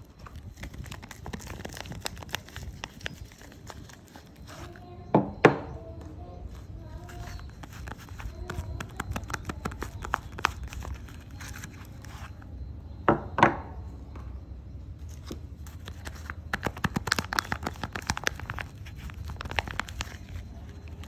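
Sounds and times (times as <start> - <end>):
soap wrapping crinkling: 0.0 - 4.8, 6.5 - 12.4, 15.2 - 21.0.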